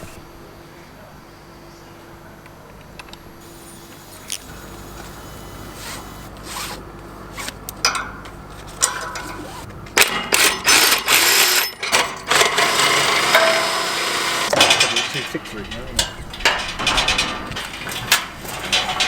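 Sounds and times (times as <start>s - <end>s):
scraping and rattling bursts: 8.6s - 19.0s.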